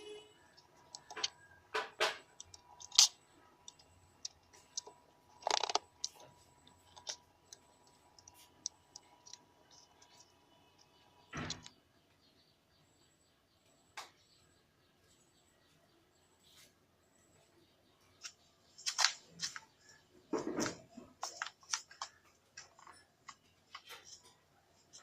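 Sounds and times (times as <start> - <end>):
small parts clicking and scraping: 0.5 - 11.7, 18.2 - 25.0.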